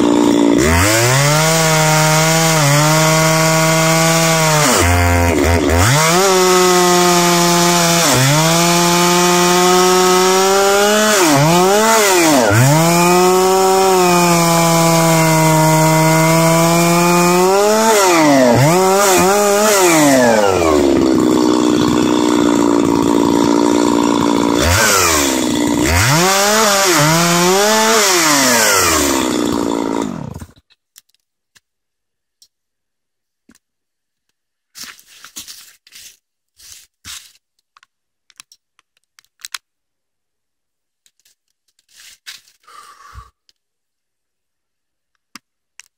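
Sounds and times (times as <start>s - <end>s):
chainsaw ripping along a log: 0.0s - 30.6s, 34.8s - 37.4s.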